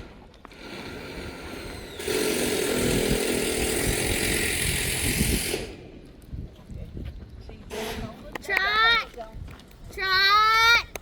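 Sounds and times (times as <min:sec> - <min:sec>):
small engine running: 0:00.5 - 0:05.8.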